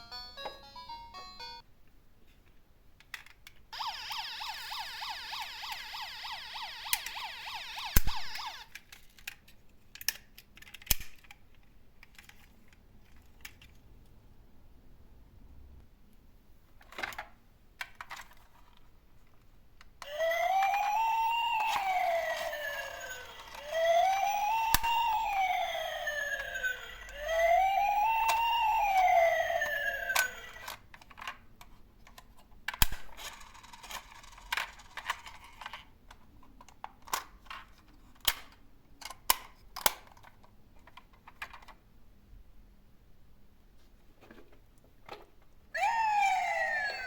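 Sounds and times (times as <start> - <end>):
wailing emergency siren: 3.8 - 8.7, 20.0 - 30.7, 45.8 - 47.0
toy cars rolling and clacking: 20.0 - 41.8.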